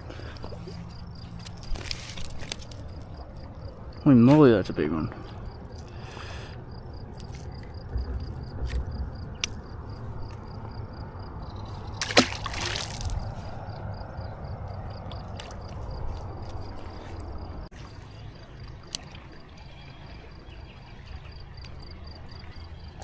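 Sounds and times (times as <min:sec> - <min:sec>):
water sloshing: 0:00.0 - 0:04.4, 0:11.7 - 0:13.9
insect chirping: 0:00.0 - 0:18.6, 0:19.3 - 0:23.0
sharp splash: 0:12.0 - 0:13.3.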